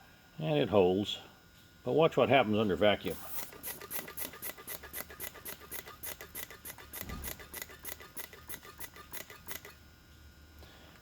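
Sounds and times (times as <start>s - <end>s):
hand vacuum pump clicking: 3.3s - 9.8s.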